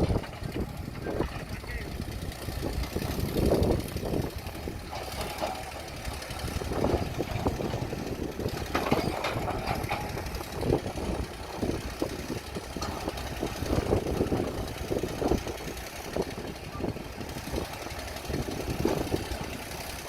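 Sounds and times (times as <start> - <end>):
excavator diesel engine running: 0.0 - 20.0
metal knocks and clanks: 8.6 - 10.6.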